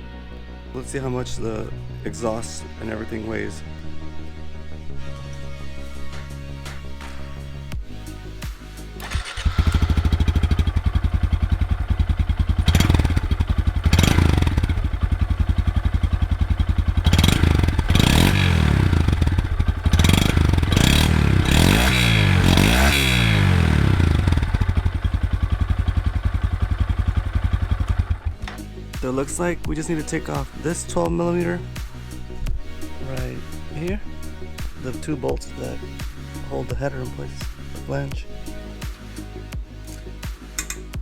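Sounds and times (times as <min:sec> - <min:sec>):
motorcycle engine revving: 0:08.7 - 0:28.7.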